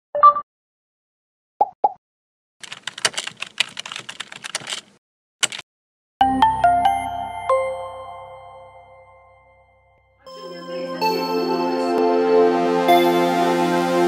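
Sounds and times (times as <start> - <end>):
keyboard typing clicks: 2.6 - 5.6
music: 6.2 - 14.0.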